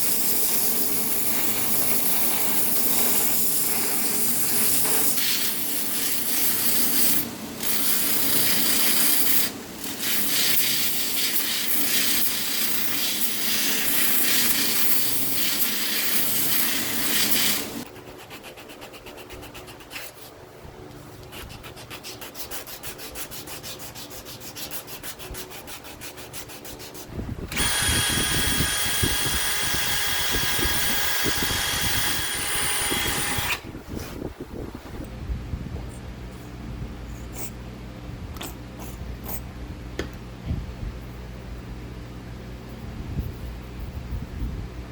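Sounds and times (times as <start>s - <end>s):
machine whining: 27.4s - 33.8s.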